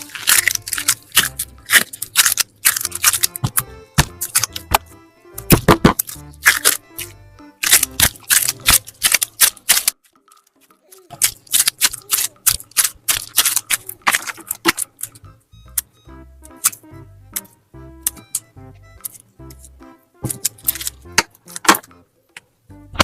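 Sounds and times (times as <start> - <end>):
slime clicking and popping: 0.0 - 10.0, 11.1 - 15.2, 16.5 - 18.4
soft background music: 0.0 - 23.0.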